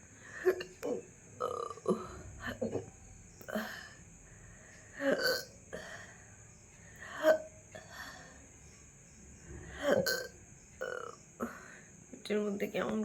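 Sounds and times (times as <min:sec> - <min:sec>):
person hiccuping: 0:05.1 - 0:05.6, 0:09.9 - 0:11.2.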